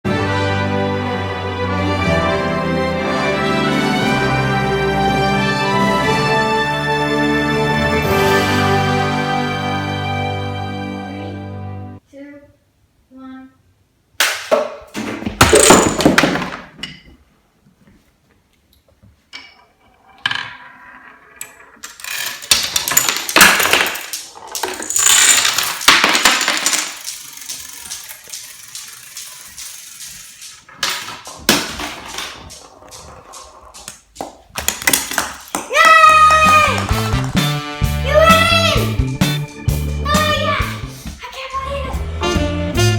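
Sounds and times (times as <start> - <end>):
marbles rolling and clattering: 15.4 - 17.0, 19.4 - 37.6.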